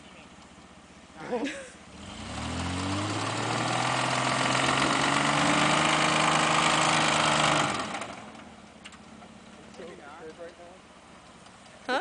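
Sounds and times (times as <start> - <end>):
truck engine revving: 1.8 - 9.9.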